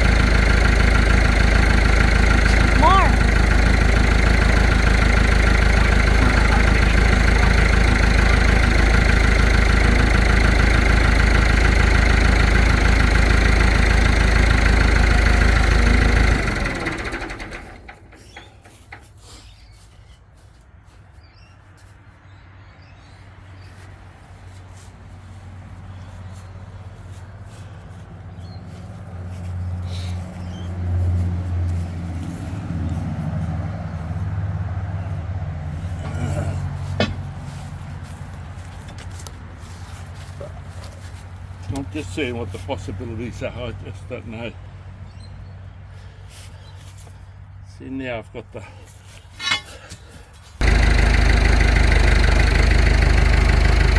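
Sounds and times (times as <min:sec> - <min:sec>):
excavator diesel engine running: 0:00.0 - 0:19.1, 0:26.6 - 0:45.0, 0:49.4 - 0:49.9, 0:50.6 - 0:53.9
low engine rumble: 0:00.0 - 0:19.4, 0:23.3 - 0:53.9.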